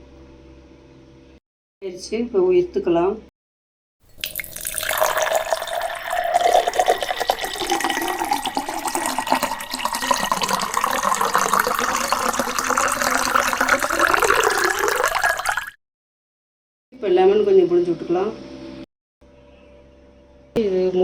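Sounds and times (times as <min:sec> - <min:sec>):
tea pouring through strainer: 0:04.1 - 0:15.8.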